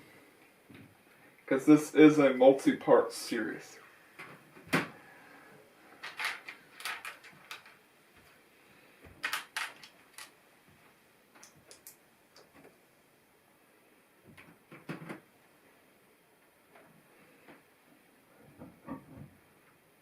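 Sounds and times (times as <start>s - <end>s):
plastic bricks clicking together: 6.0s - 7.8s, 9.2s - 10.4s, 11.4s - 12.0s.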